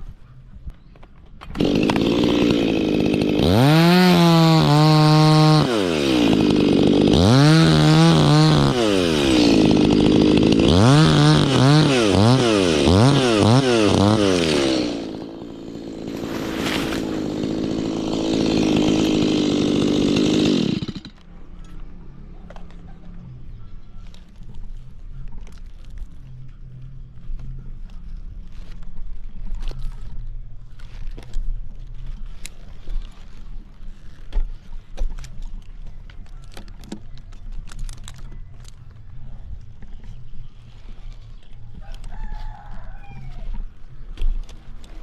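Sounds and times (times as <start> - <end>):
chainsaw revving and idling: 1.6 - 21.2.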